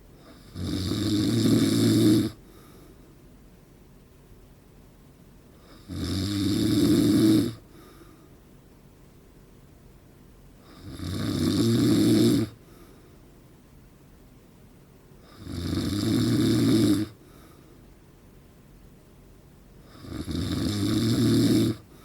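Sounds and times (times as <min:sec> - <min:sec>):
man snoring loudly: 0:00.2 - 0:02.4, 0:05.7 - 0:07.6, 0:10.7 - 0:12.6, 0:15.2 - 0:17.2, 0:19.9 - 0:21.9.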